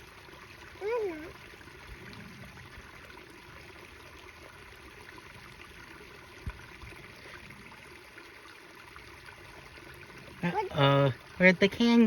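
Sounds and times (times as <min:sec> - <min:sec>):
water running into culvert: 0:00.0 - 0:12.0.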